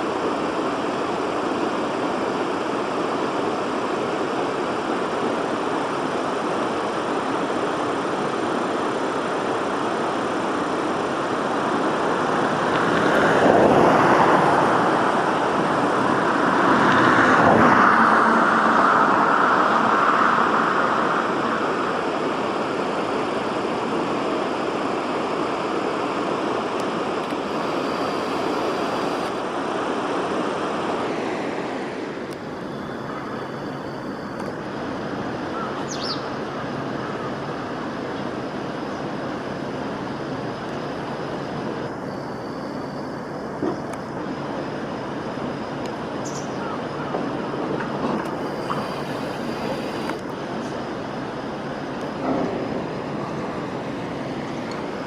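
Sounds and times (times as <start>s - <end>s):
passing vehicles rushing: 12.2s - 23.8s.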